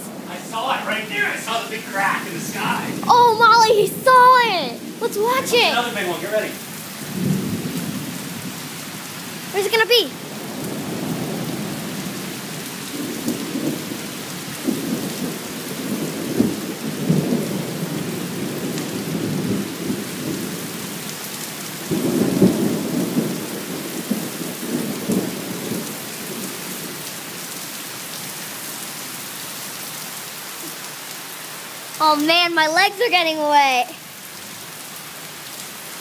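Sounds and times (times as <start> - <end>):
rolling thunder: 0.0 - 8.8, 10.2 - 21.0, 21.8 - 27.0
heavy rain pouring: 0.0 - 36.0.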